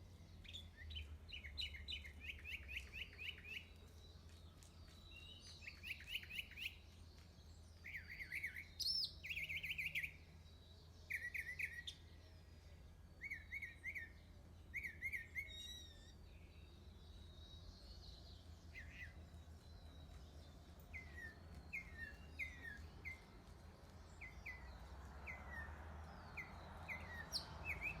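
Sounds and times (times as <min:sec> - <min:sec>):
songbird chirping: 0:00.0 - 0:28.0.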